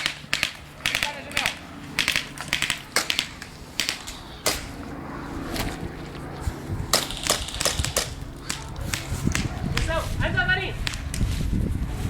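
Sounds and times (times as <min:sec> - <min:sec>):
sharp snaps and clicks: 0:00.0 - 0:04.7, 0:07.0 - 0:10.0.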